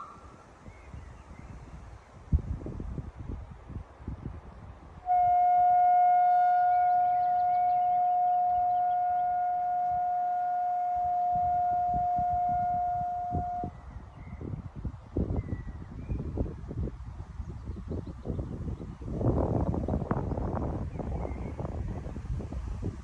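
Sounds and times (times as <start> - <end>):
siren steady tone: 0.0 - 0.3, 5.0 - 13.8.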